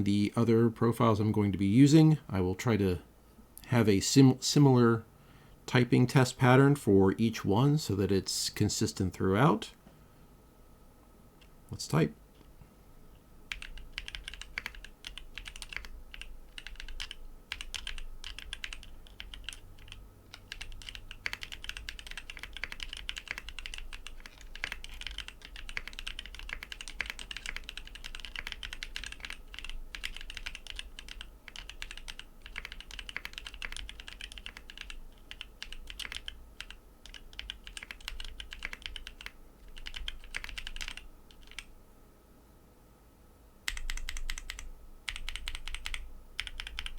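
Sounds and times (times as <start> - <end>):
typing on mechanical keyboard: 13.5 - 41.7, 43.7 - 46.9.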